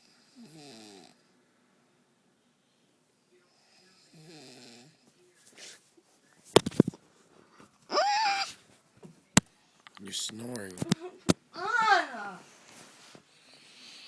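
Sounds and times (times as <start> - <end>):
woman snoring: 0.4 - 1.2
high vocal squeal: 7.9 - 8.6.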